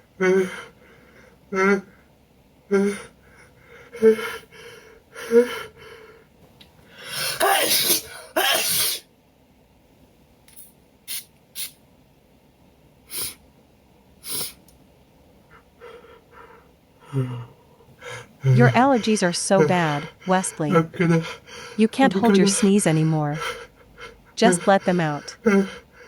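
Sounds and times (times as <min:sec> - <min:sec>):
man sneezing: 0:07.1 - 0:09.0, 0:24.4 - 0:25.8
short sniffs: 0:11.1 - 0:11.8, 0:13.1 - 0:13.4, 0:14.2 - 0:14.6
man gasping: 0:15.8 - 0:26.0.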